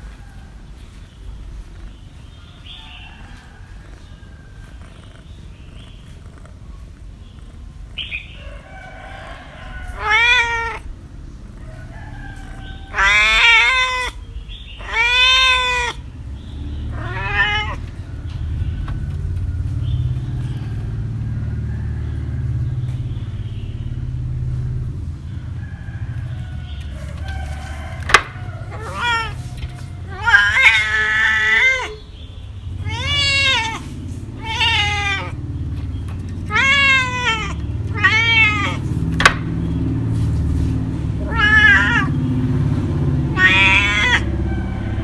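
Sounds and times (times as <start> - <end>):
cat meowing: 9.4 - 10.9, 12.1 - 16.1, 16.9 - 18.0, 27.9 - 32.1, 32.7 - 39.0, 41.2 - 42.2, 43.2 - 44.3.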